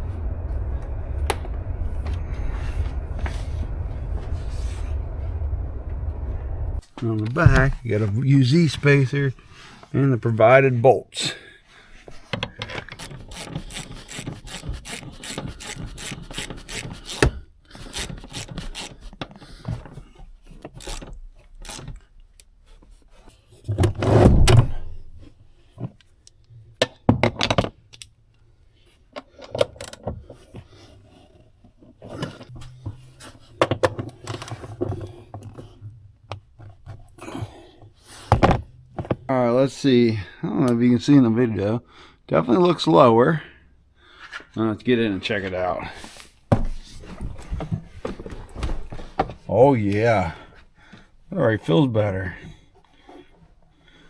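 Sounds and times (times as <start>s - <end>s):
loud thumps: 0.0s - 8.2s, 38.3s - 39.3s, 46.5s - 49.0s
hand ratchet clicking: 13.0s - 17.2s.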